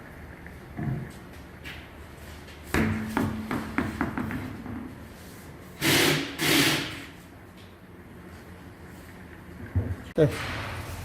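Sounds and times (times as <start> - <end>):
short loud noisy bursts: 5.8 - 7.1.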